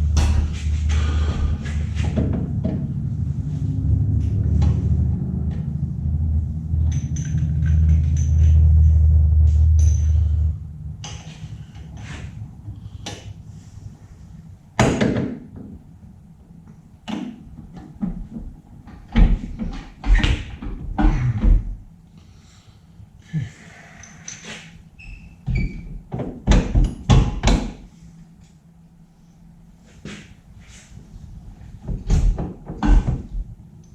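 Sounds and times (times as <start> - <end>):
metal car parts clunking: 6.8 - 10.3.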